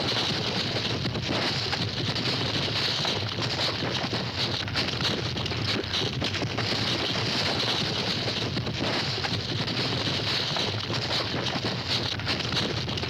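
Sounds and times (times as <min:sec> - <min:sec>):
hooves pounding the ground: 0:00.0 - 0:13.0.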